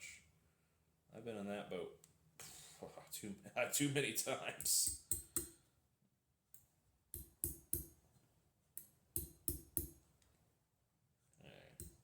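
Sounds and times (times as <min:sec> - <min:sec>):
hammer tapping silver ring: 0:04.9 - 0:05.6, 0:07.1 - 0:08.0, 0:08.8 - 0:10.0.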